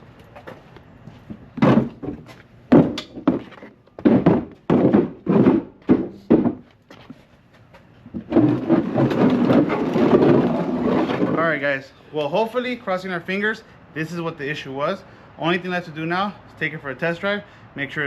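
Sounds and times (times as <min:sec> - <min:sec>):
dull thunks of hard parts: 0:01.3 - 0:06.7.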